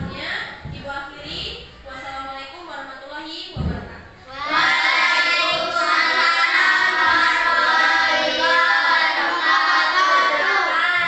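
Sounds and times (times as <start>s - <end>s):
children singing in unison: 4.3s - 11.0s.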